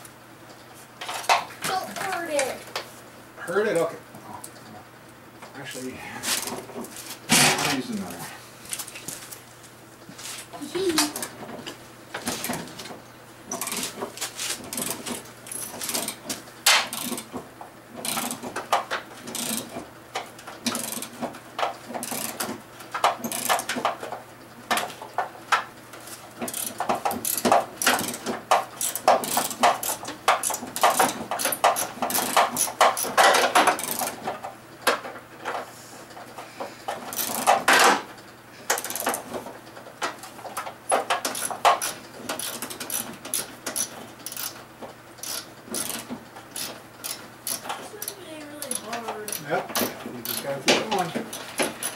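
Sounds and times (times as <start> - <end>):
metallic clicks and clanks of tools: 14.7 - 17.3, 26.4 - 35.6, 36.9 - 38.0, 38.7 - 39.3, 40.0 - 44.6, 45.2 - 51.9.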